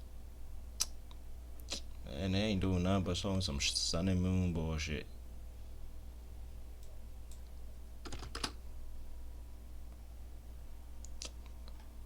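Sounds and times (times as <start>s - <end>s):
computer keyboard typing: 7.3s - 8.6s.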